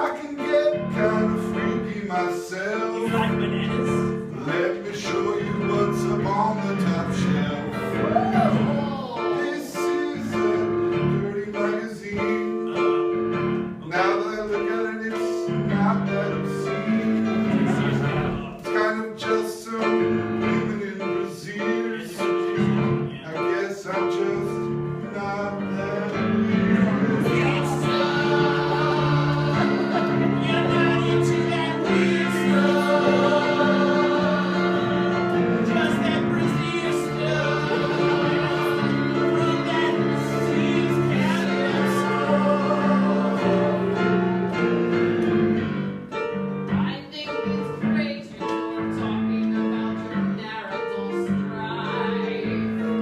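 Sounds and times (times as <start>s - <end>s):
instrumental backing: 0.0s - 53.0s
choir singing held chords: 16.0s - 18.6s, 24.4s - 46.0s.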